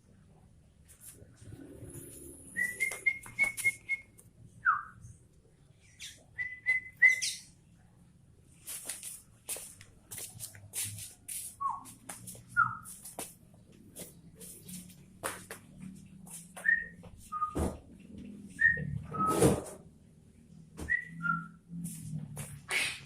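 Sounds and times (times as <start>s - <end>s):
bird whistled notes: 2.5s - 4.0s, 6.0s - 7.5s.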